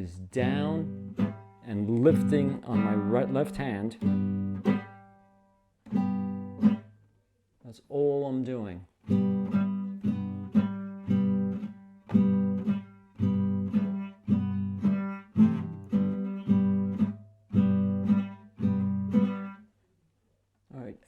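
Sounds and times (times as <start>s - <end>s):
guitar strummed in choppy rhythm: 0.3s - 5.3s, 5.9s - 7.0s, 9.0s - 19.6s.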